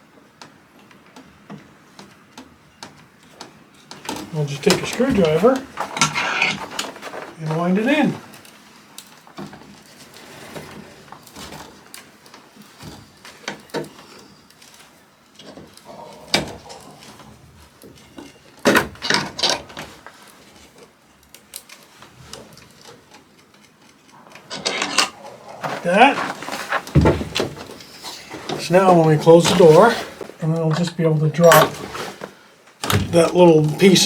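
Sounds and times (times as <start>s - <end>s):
eye bolt clicking and creaking: 23.4s - 25.8s.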